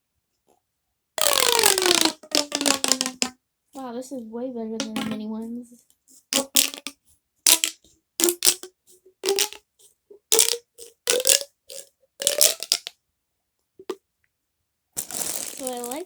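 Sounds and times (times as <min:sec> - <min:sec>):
plastic pop tube popping: 0:01.2 - 0:03.4, 0:04.8 - 0:05.3, 0:06.3 - 0:13.0, 0:13.8 - 0:14.0, 0:15.0 - 0:16.0.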